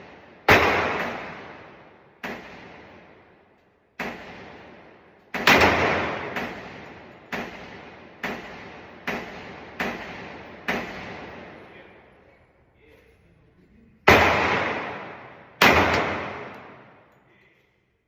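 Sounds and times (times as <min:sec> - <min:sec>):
handgun shots echoing: 0:00.0 - 0:03.1, 0:04.0 - 0:11.6, 0:14.1 - 0:17.2.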